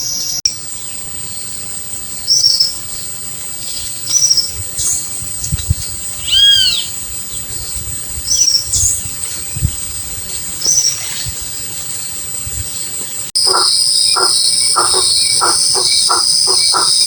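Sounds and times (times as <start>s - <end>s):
high-pitched insect drone: 0.0s - 17.0s
wild birds calling: 5.9s - 17.0s.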